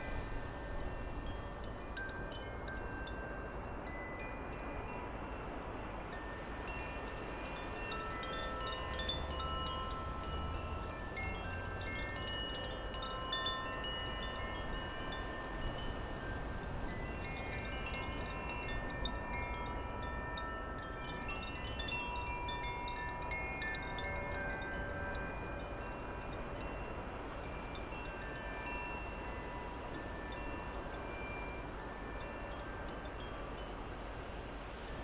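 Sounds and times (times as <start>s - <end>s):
wind chimes ringing: 0.0s - 35.0s
wind rumble on microphone: 0.0s - 35.0s.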